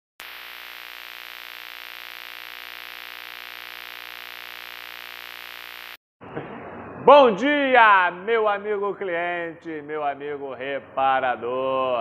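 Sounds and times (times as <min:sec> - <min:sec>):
electronic static hiss: 0:00.2 - 0:06.0.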